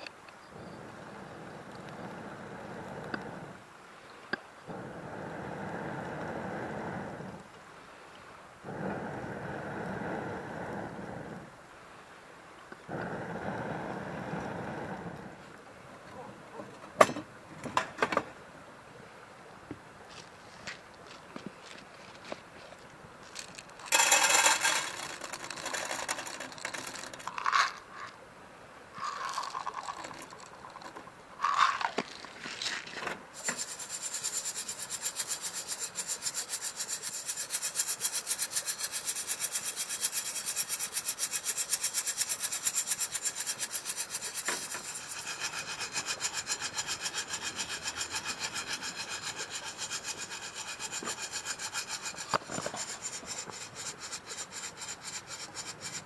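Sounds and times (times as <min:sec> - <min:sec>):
hand saw cutting wood: 0:23.9 - 0:27.2, 0:33.4 - 0:56.0.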